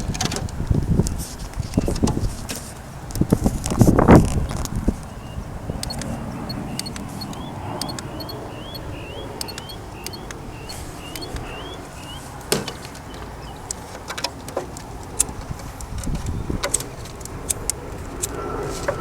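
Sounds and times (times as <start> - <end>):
small bird chirping: 5.0 - 12.4
scattered clicks: 5.8 - 11.6.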